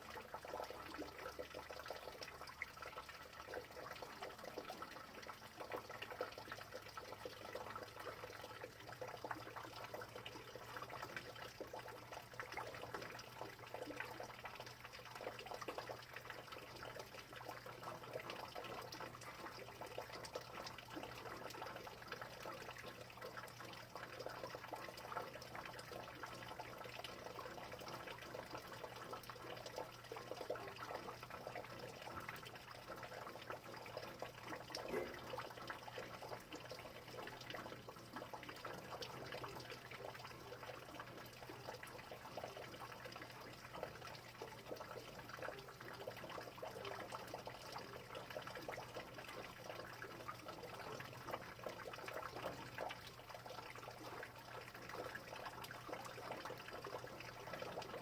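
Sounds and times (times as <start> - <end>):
trickling water: 0.0 - 58.0.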